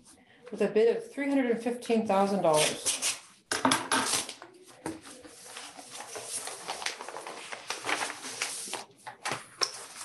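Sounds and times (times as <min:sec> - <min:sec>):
paper rustling and crackling: 0:04.0 - 0:10.0.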